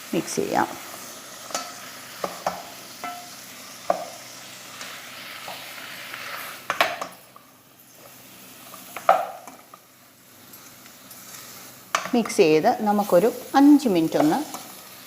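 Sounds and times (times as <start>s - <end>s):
food sizzling in a pan: 0.0s - 15.0s
spatula knocking and scraping pan: 1.5s - 4.2s.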